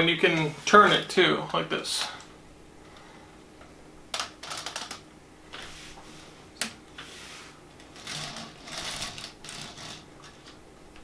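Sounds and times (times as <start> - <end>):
plastic parts clicking and rattling: 4.1 - 5.0, 7.8 - 11.0.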